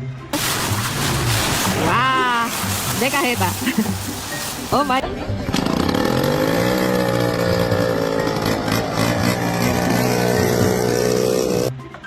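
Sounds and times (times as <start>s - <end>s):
small engine running at high speed: 5.4s - 11.7s.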